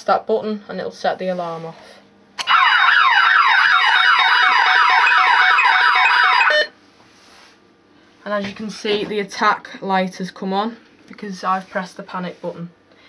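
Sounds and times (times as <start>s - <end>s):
alarm siren sweeping wail: 2.4s - 6.7s.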